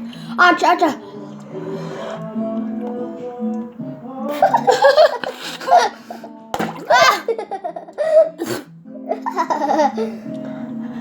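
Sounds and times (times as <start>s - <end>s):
background music: 0.0s - 11.0s
young voices laughing: 4.3s - 6.2s, 6.8s - 8.4s, 9.1s - 10.3s.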